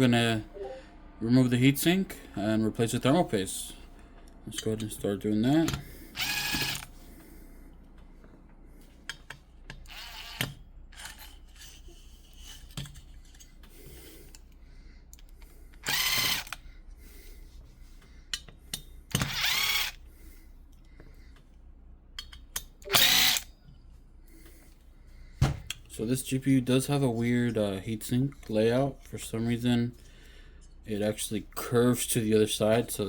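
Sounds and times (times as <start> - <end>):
electric screwdriver running: 6.2 - 6.9, 9.9 - 10.5, 15.8 - 16.6, 19.2 - 20.0, 22.9 - 23.5.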